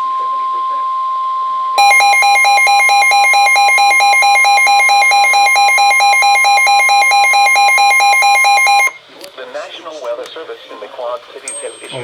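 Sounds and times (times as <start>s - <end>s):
steady alarm tone: 1.8s - 9.0s
two-tone warbling alert siren: 1.8s - 9.0s.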